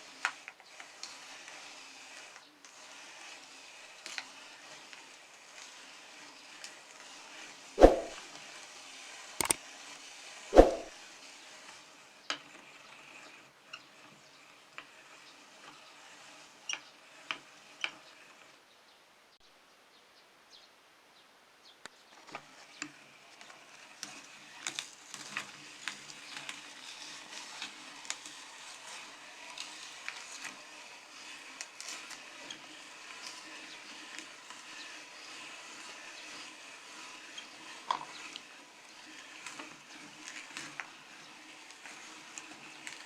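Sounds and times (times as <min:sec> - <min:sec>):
meat grinder crushing biscuits: 0:00.0 - 0:07.6, 0:23.0 - 0:43.0.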